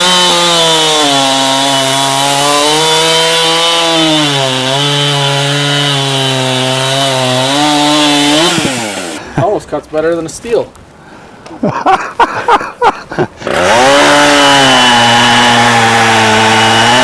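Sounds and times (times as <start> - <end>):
chainsaw cutting through wood: 0.0 - 9.2, 13.4 - 17.0.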